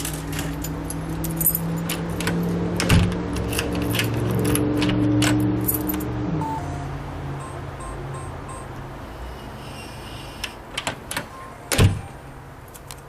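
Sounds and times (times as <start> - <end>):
keys jangling against a lock: 0.0 - 2.4, 3.4 - 6.1.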